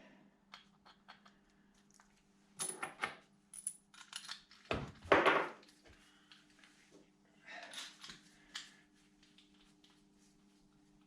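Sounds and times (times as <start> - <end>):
small metal parts clinking: 2.6 - 4.7.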